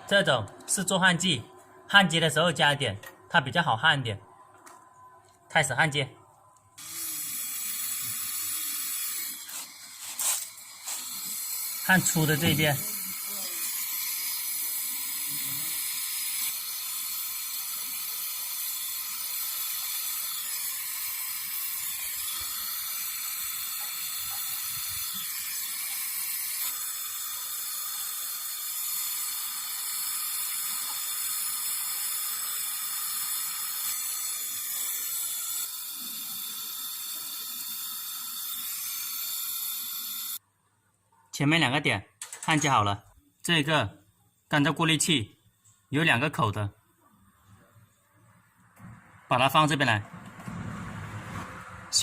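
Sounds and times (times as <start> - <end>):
torch flame hissing: 6.8 - 40.4.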